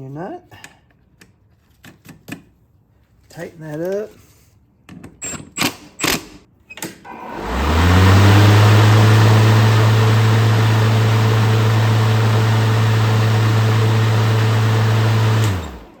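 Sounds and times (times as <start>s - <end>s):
electric lawnmower motor running: 7.1s - 16.0s.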